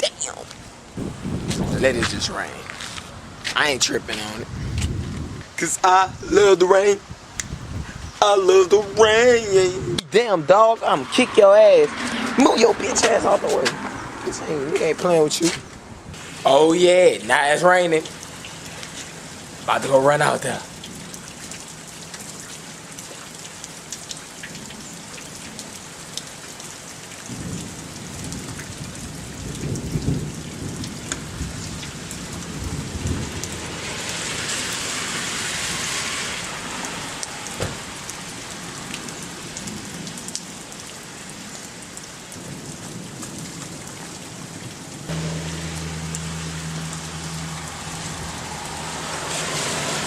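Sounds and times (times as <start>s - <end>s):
steady rain falling: 0.0s - 11.1s, 11.9s - 50.0s
thunder rumbling: 1.0s - 2.6s, 7.0s - 8.2s, 45.1s - 50.0s
low engine hum: 45.1s - 50.0s.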